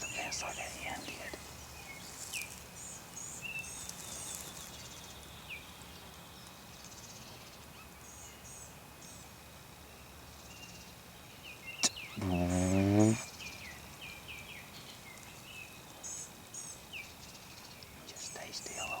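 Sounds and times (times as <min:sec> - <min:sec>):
small birds chirping: 0:00.0 - 0:09.2, 0:11.4 - 0:19.0
faint low hum: 0:12.2 - 0:13.3.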